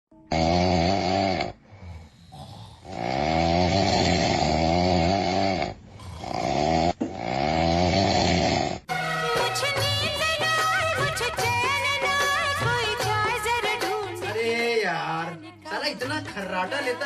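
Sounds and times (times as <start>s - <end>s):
loud snoring: 0.2s - 8.9s.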